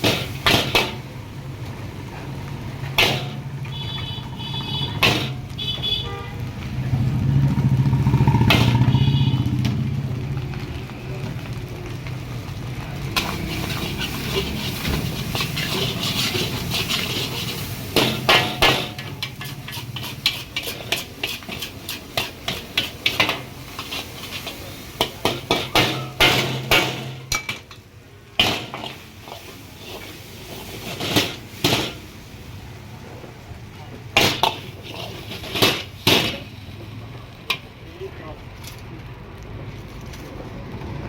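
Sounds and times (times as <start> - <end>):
metal spatula scraping wok: 0.0 - 1.2, 1.8 - 6.1, 7.0 - 9.5, 13.1 - 32.7, 34.1 - 37.8.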